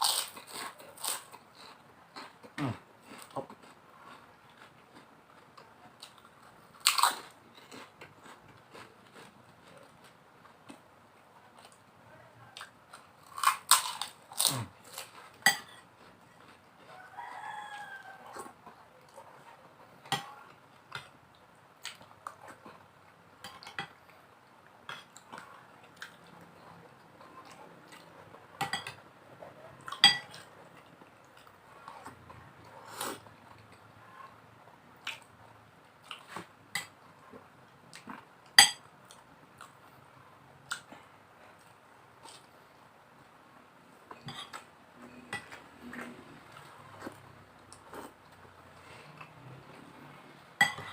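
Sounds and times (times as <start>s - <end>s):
cutlery clinking on plate: 30.0s - 30.4s, 38.6s - 38.8s.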